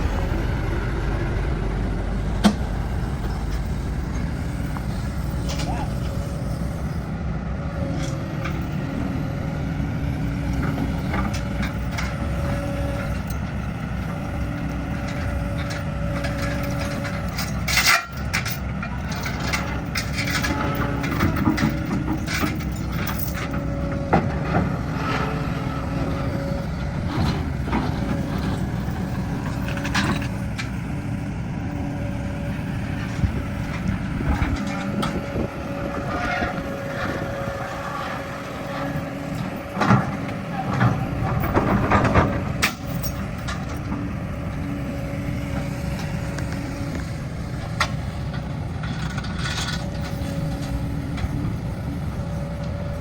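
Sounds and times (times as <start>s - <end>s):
diesel engine running: 0.0s - 53.0s
metallic clanks and knocks: 2.3s - 6.2s, 15.0s - 25.4s, 38.7s - 44.2s.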